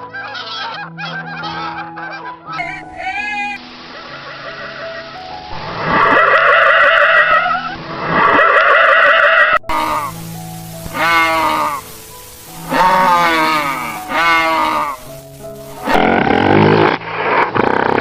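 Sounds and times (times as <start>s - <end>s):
farm animals calling: 0.0s - 5.2s, 6.0s - 17.0s
background music: 0.0s - 18.0s
animal bleats: 8.3s - 10.2s, 10.9s - 11.9s, 12.6s - 17.0s.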